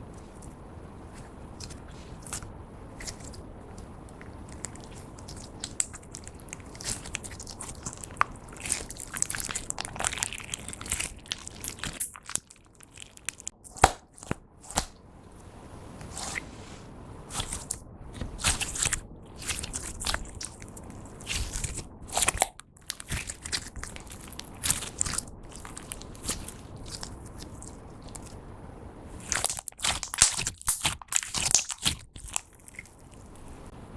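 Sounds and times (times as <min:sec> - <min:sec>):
slime crackling and clicking: 0:01.6 - 0:14.9, 0:18.4 - 0:28.4, 0:29.2 - 0:33.0.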